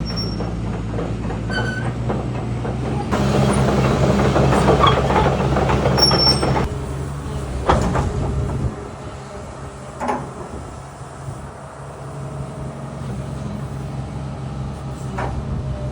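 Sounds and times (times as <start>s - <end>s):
brief high squeaks: 0.0s - 0.5s, 1.5s - 2.0s, 6.0s - 6.7s
heavy machinery engine: 0.0s - 15.9s.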